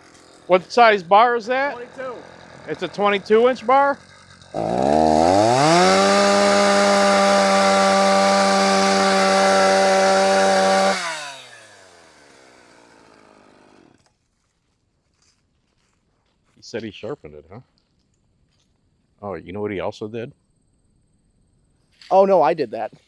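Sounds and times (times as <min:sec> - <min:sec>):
chainsaw revving: 0:00.0 - 0:14.1.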